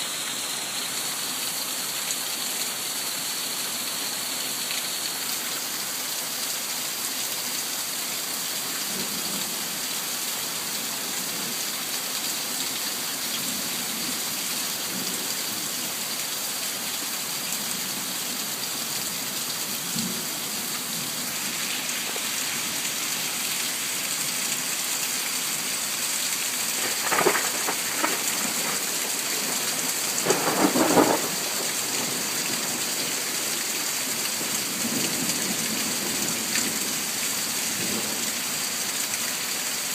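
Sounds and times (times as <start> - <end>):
heavy rain falling: 0.0 - 39.9
thunder claps: 26.8 - 29.2, 30.2 - 32.0.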